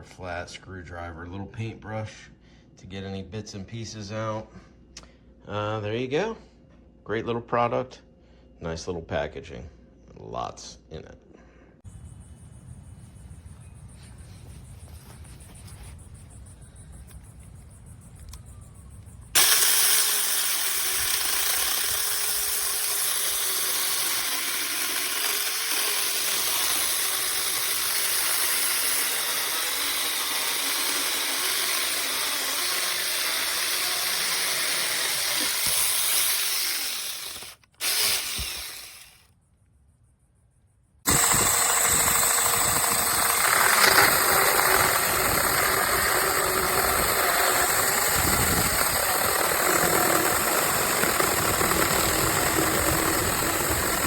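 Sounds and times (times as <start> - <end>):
electric chainsaw whining: 19.3 - 39.3, 41.1 - 54.0.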